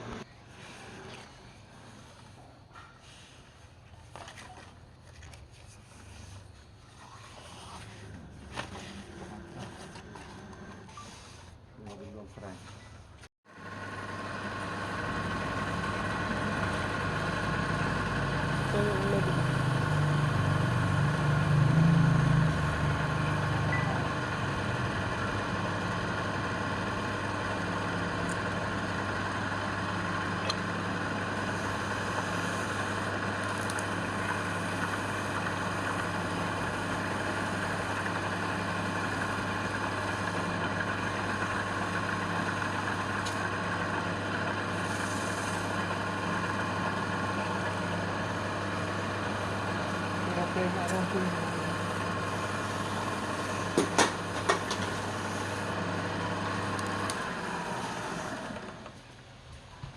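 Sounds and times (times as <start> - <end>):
lathe motor humming: 13.5 - 59.1.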